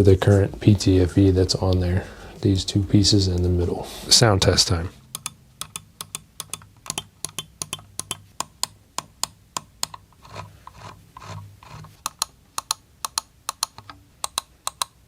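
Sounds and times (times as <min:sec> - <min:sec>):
soft rubbing sounds: 0:00.0 - 0:05.1, 0:10.1 - 0:12.0.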